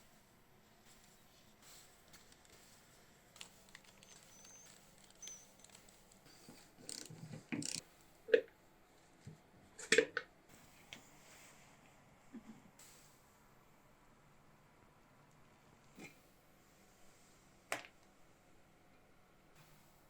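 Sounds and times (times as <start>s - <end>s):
tools scraping and clicking on metal: 3.4s - 7.8s
faint short squeaks: 4.0s - 5.8s.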